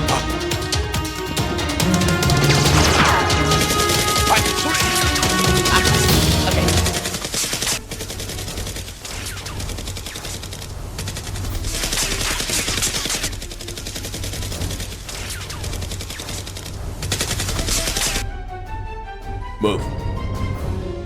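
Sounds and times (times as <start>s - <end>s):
rapid automatic gunfire: 2.1s - 18.2s.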